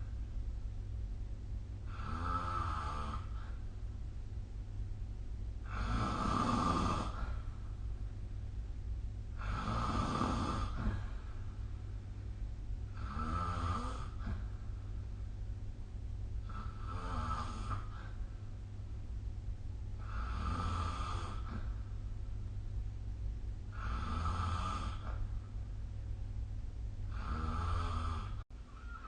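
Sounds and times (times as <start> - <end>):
low background hum: 0.0 - 29.0
person snoring: 1.8 - 3.6, 5.6 - 7.4, 9.3 - 11.3, 12.9 - 14.5, 16.4 - 18.2, 20.0 - 21.8, 23.7 - 25.2, 27.1 - 29.0.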